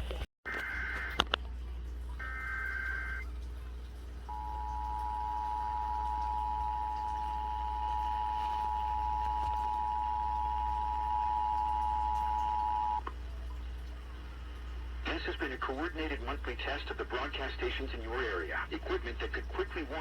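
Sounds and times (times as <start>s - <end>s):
warbling data burst: 2.2s - 3.2s
two-tone attention signal: 4.3s - 13.0s.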